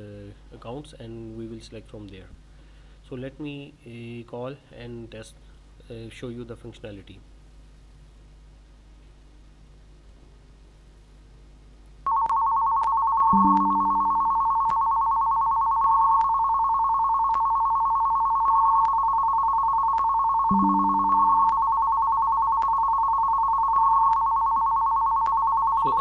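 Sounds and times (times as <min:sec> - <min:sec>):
telephone ringtone: 0:12.1 - 0:26.0
short lower tone: 0:20.5 - 0:21.8.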